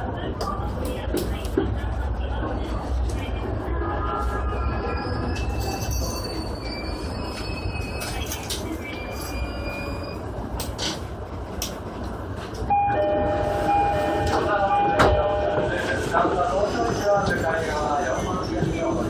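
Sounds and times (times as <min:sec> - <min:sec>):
electric train running slowly: 0:00.0 - 0:19.0
high wheel squeal: 0:04.6 - 0:10.3.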